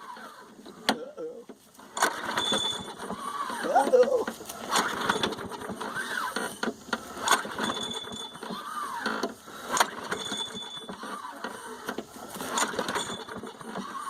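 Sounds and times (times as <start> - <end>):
mower engine turning over: 0.0 - 14.0
starter cord clacking back: 0.1 - 14.0.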